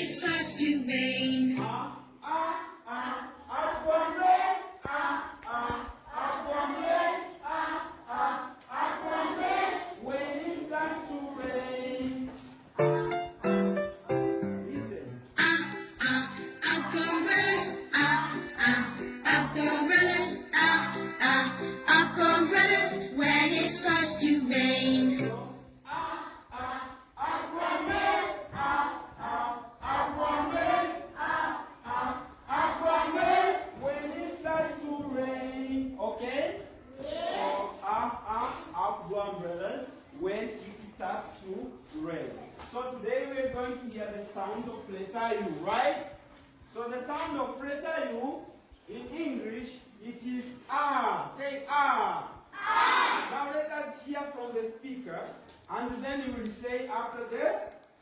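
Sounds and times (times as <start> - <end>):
group singing children's song: 0.0 - 13.4, 15.2 - 39.4.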